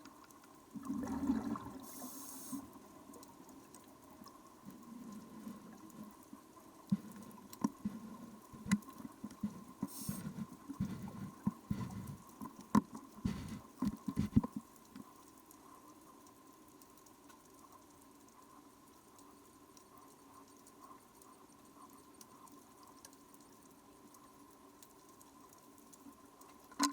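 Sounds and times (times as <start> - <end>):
faint steady tone: 0.0 - 26.9
sharp clicks and knocks: 6.9 - 14.6.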